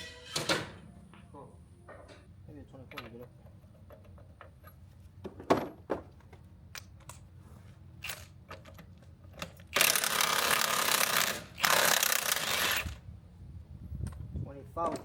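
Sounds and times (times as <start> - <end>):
power tool bursts: 9.7 - 12.9.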